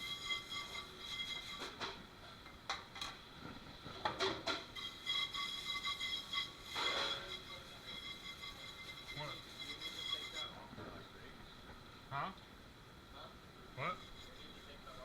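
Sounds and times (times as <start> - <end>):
dishes and utensils clattering: 3.9 - 10.5.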